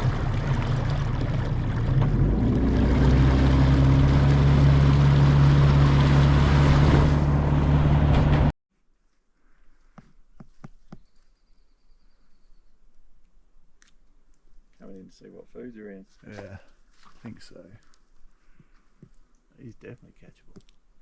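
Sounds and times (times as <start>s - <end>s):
water rushing past: 0.0s - 8.4s
outboard motor running: 0.0s - 8.5s.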